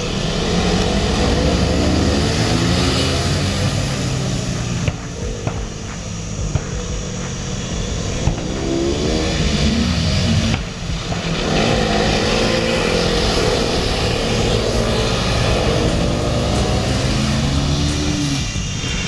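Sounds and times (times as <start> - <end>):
motorcycle engine accelerating: 0.0 - 19.0
steady rushing noise: 0.0 - 19.0.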